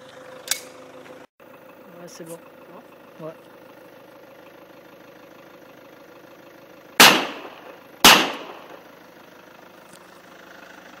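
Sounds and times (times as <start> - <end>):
pistol gunshots: 7.0 - 8.8.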